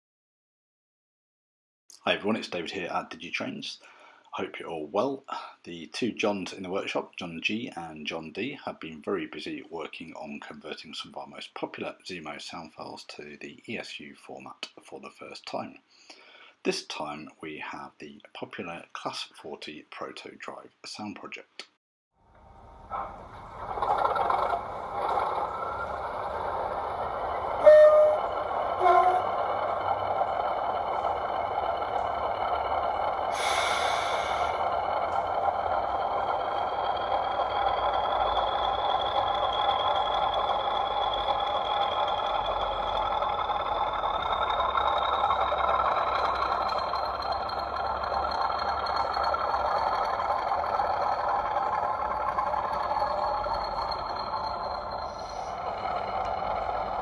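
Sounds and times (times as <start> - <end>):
diesel engine running: 22.3 - 57.0
turbocharger whistle rising: 25.7 - 57.0
model locomotive horn toots: 27.4 - 29.7
air hiss burst: 33.3 - 34.6.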